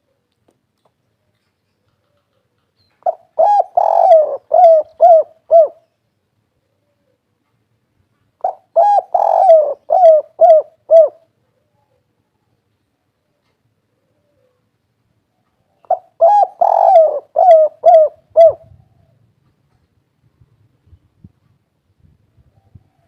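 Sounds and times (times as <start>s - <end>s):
dove cooing: 1.9s - 5.9s, 8.4s - 12.4s, 14.0s - 14.7s, 15.6s - 19.2s.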